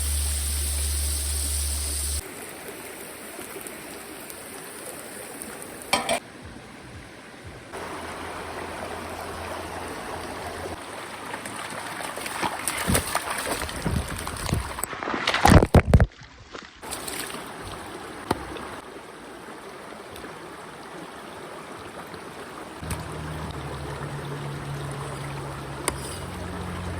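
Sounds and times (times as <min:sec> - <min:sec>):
stream water running: 0:00.0 - 0:26.9
loud clatters and splashes: 0:07.8 - 0:18.8.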